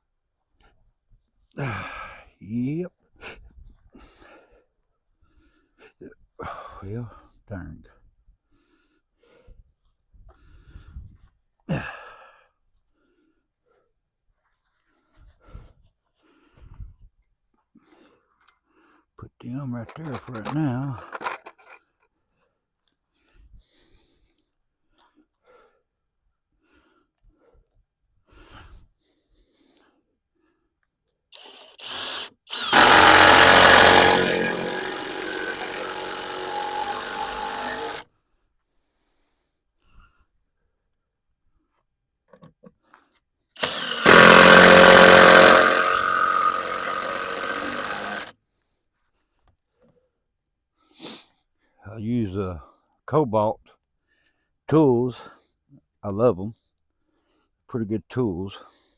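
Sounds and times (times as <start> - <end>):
soft breathing: 8.4 - 11.4
cordless power tool motor: 31.4 - 38.0, 43.6 - 48.3.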